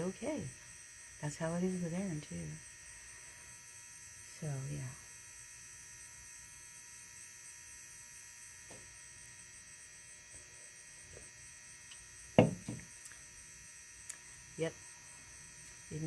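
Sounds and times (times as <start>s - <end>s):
faint electrical hum: 0.0s - 16.0s
loud thump: 12.4s - 12.9s.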